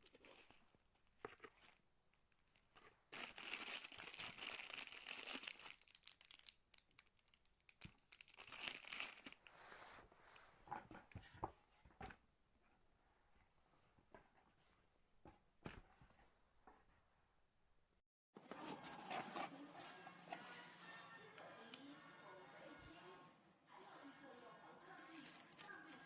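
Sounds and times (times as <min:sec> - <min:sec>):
packaging crinkling and rustling: 0:00.0 - 0:09.5, 0:25.1 - 0:26.0.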